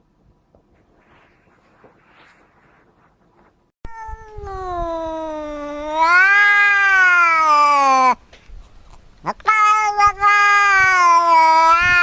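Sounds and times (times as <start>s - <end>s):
cat yowling: 3.9s - 8.2s, 9.3s - 12.0s.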